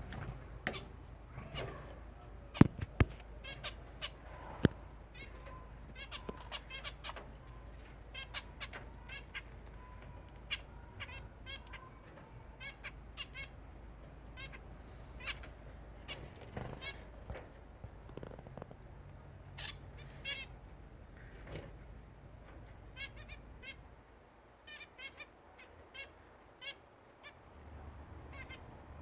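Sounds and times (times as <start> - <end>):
finches chirping: 2.5 - 17.2, 19.5 - 20.6, 24.7 - 28.7.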